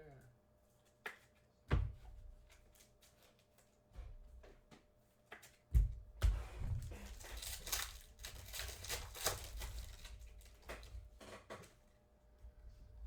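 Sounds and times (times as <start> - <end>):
foil pack crinkling and tearing: 7.0 - 11.0.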